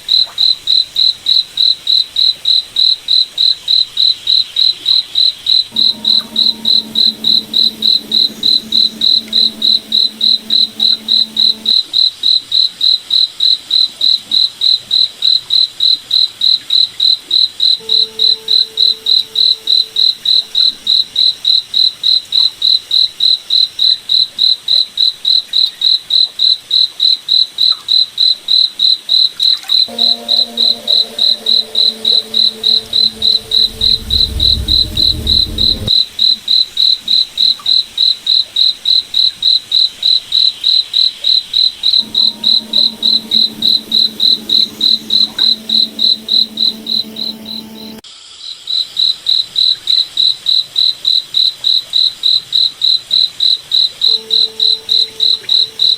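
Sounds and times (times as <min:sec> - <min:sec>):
cricket chirping: 0:05.7 - 0:11.8
low humming tone: 0:05.7 - 0:11.9, 0:29.9 - 0:35.9, 0:42.0 - 0:48.0.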